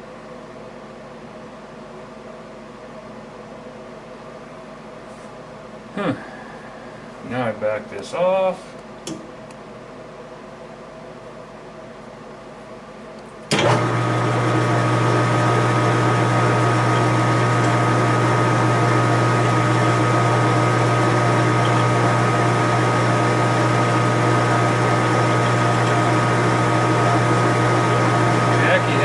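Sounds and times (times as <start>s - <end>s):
lathe motor humming and whining: 13.5s - 29.0s.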